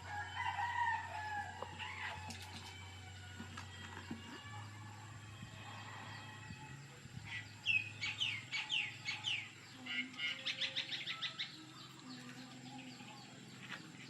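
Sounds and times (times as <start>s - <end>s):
high chirping calls: 7.2s - 12.9s.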